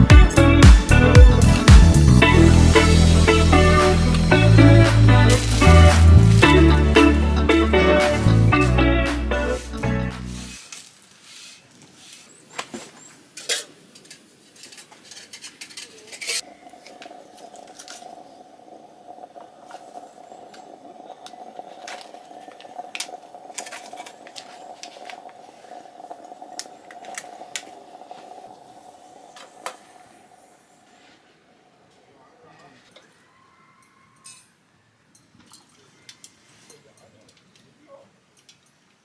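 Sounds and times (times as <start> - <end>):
faint steady hum: 16.4 - 32.7.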